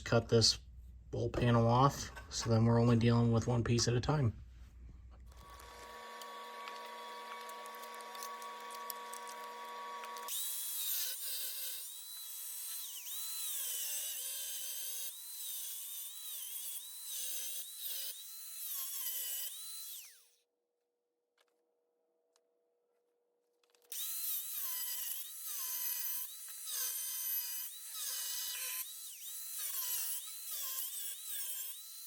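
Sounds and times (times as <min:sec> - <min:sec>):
power cutting tool cutting metal: 0:05.4 - 0:20.2, 0:23.9 - 0:32.0.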